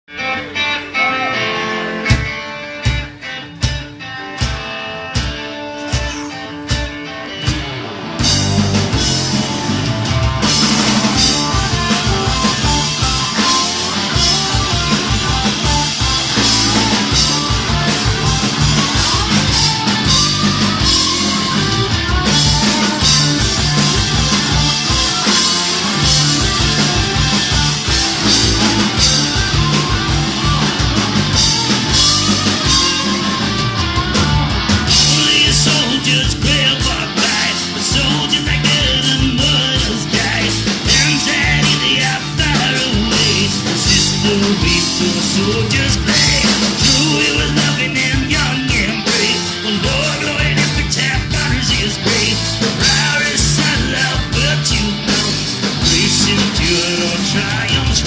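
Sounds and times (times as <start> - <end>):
live rock band playing: 0.0 - 58.0
drum hits: 7.5 - 47.8.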